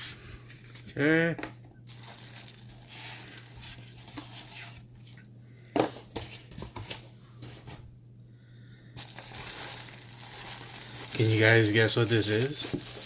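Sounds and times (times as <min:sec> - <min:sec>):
packaging rustling and crinkling: 0:01.9 - 0:07.8, 0:09.0 - 0:13.0.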